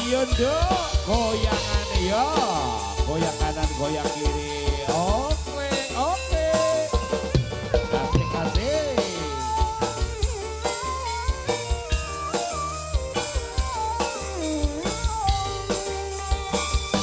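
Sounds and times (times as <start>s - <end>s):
low bass line: 0.0s - 17.0s
steady drum beat: 0.0s - 17.0s
sliding pitch melody: 5.7s - 17.0s.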